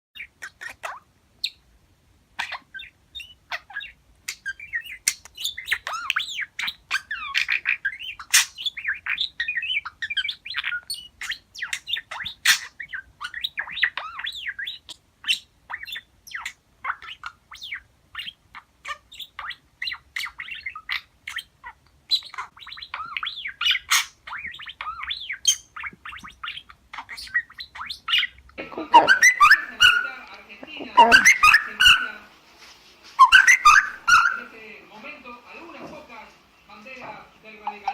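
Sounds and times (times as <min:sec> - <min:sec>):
cockatiel chirping and whistling: 0:22.1 - 0:28.4, 0:29.0 - 0:30.2, 0:31.0 - 0:32.2, 0:33.2 - 0:34.5.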